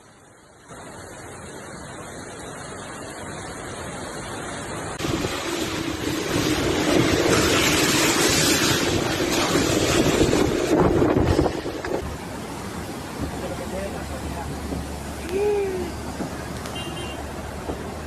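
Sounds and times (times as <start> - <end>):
rushing floodwater: 0.0 - 18.0
wind buffeting microphone: 5.0 - 13.7.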